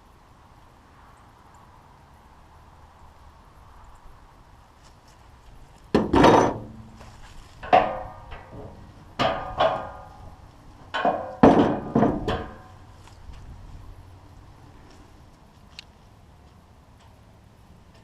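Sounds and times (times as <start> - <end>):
metal knocks and clanks: 5.9 - 7.0, 7.6 - 12.8.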